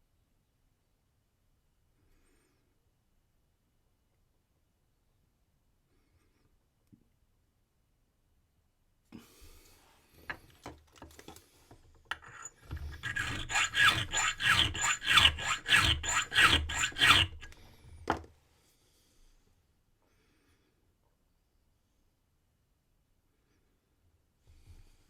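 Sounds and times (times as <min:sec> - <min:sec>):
hand file rasping on brass key: 0:12.1 - 0:17.7.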